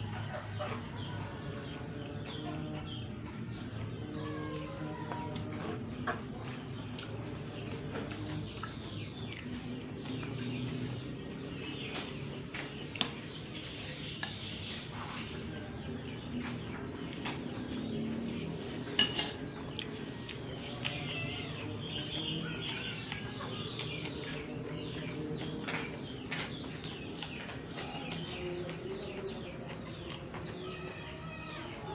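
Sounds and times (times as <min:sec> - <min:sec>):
birds calling: 0:00.0 - 0:31.9
cutlery and dishes clinking: 0:14.2 - 0:15.2, 0:18.9 - 0:19.5.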